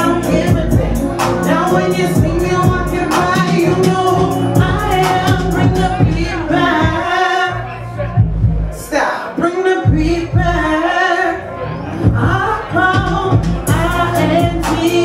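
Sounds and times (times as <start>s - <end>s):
song with woman singing: 0.0s - 7.6s, 12.0s - 15.0s.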